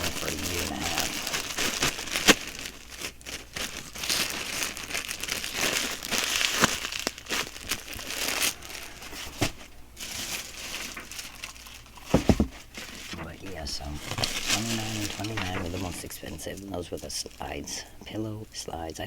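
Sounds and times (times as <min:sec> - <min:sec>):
packaging crinkling and rustling: 0:00.0 - 0:17.9
dull knocks: 0:12.0 - 0:13.2.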